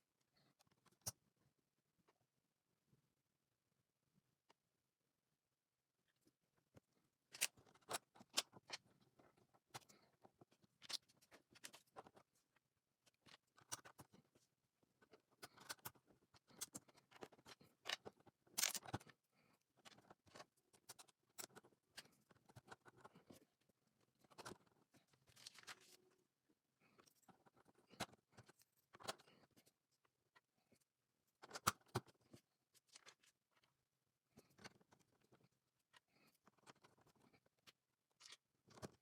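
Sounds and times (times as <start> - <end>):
plastic pieces clicking together: 18.6 - 19.1.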